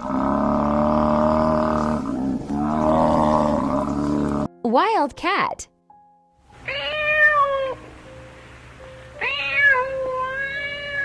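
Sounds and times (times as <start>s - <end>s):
cat meowing: 6.6s - 7.8s, 9.2s - 11.0s.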